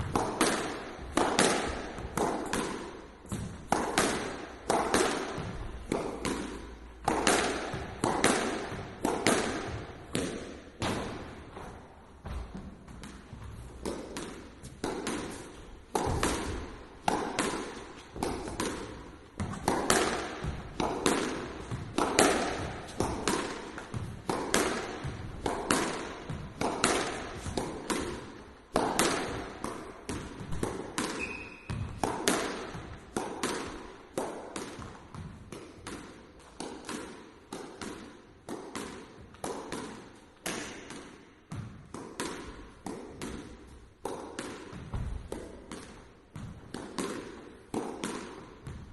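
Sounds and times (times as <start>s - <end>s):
squash ball knocks: 0.0s - 48.9s
short high squeak: 31.2s - 31.7s.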